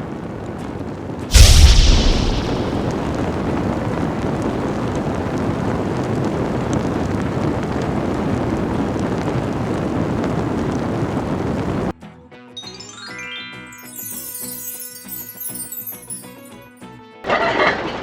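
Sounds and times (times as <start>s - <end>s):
loud boom: 1.3s - 4.0s
steady low rumbling: 1.3s - 4.4s.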